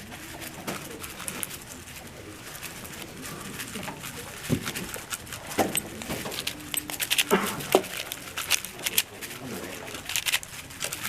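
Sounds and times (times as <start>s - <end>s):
speedcube clicking: 0.0s - 11.0s.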